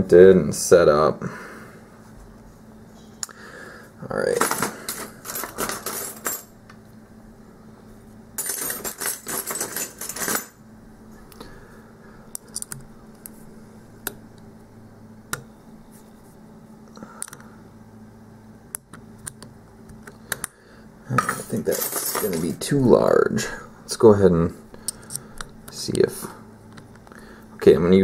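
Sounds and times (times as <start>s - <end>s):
metal tools clinking: 4.3s - 6.6s, 8.4s - 10.6s, 21.2s - 22.8s.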